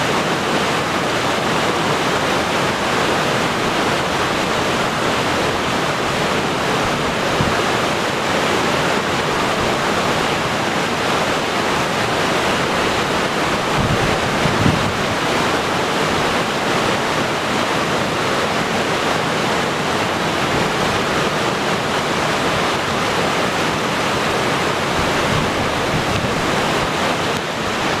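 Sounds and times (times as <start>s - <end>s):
waterfall rushing: 0.0s - 28.0s
wind thumps on microphone: 13.6s - 15.2s.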